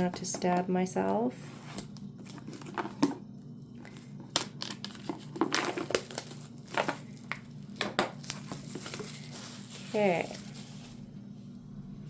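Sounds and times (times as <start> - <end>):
shrink wrap tearing and crinkling: 1.8 - 11.1.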